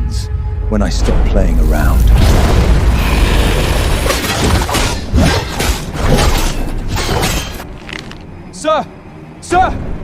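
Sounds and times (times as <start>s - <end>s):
rushing noisy blast: 1.0s - 4.2s.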